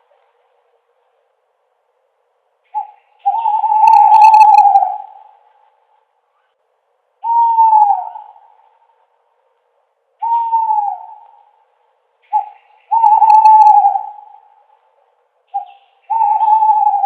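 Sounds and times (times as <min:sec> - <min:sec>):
owl hooting: 0:02.7 - 0:05.7, 0:07.2 - 0:09.0, 0:10.2 - 0:17.0.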